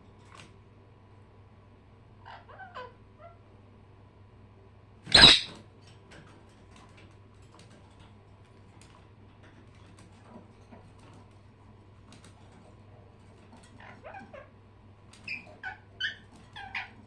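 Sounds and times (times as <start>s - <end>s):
steady low hum: 0.0s - 17.0s
harsh bird squawk: 5.1s - 5.6s.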